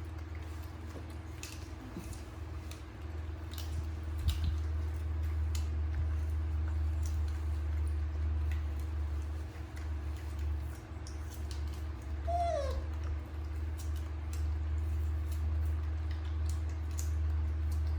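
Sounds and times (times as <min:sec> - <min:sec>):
pet chewing fruit crunches: 0:00.0 - 0:17.9.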